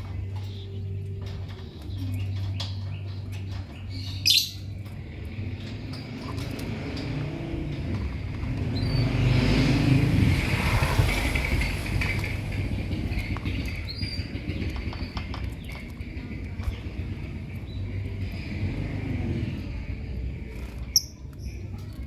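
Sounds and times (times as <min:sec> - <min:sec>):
lovebirds chirping: 0:00.0 - 0:05.4.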